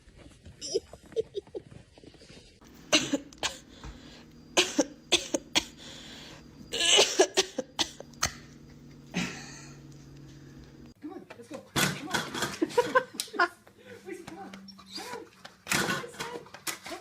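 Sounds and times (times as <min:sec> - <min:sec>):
steady low hum: 0:00.0 - 0:16.7
short sharp coughs: 0:02.9 - 0:03.7.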